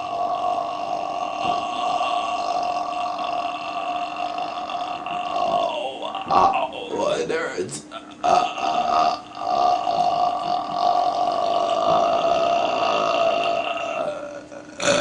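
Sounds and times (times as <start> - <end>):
man belching: 0.0 - 15.0.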